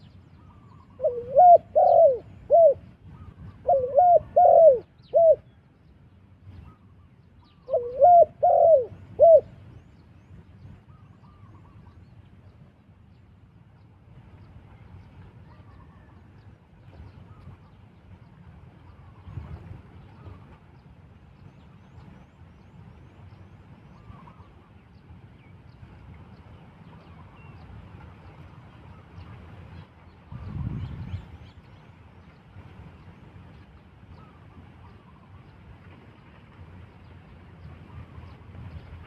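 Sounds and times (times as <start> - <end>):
dove cooing: 0.9 - 5.4, 7.7 - 9.5.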